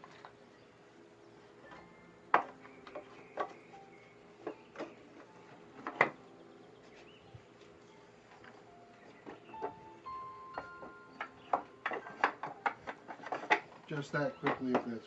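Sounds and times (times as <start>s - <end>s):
wooden knocks and clunks: 1.7s - 3.7s, 4.4s - 6.3s, 8.3s - 15.0s.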